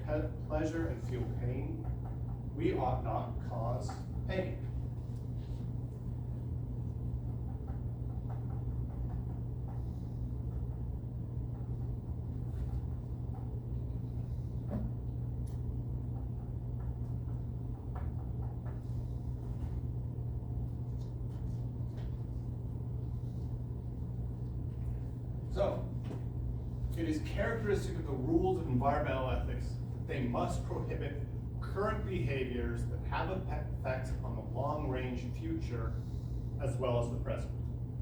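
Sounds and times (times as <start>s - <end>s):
low room tone hum: 0.0s - 38.0s
faint clicks and knocks: 1.1s - 2.6s, 7.0s - 23.2s.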